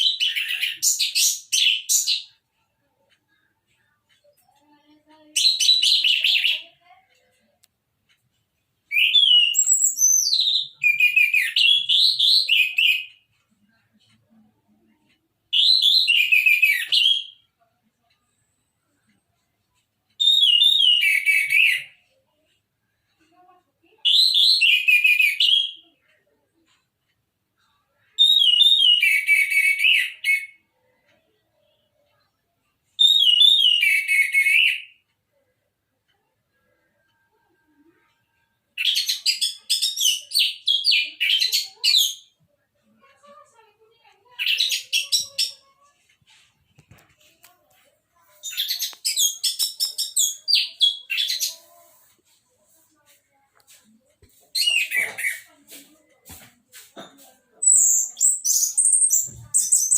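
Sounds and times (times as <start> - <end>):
bird singing whistled notes: 20.2 - 21.8, 33.0 - 34.9.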